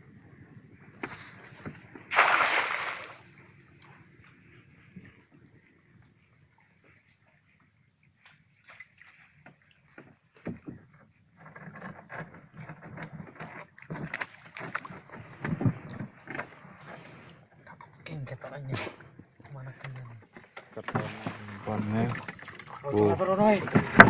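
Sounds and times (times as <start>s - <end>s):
night insects chirring: 0.0s - 24.0s
water splashing and sloshing: 1.0s - 3.5s, 11.5s - 18.0s, 19.6s - 24.0s.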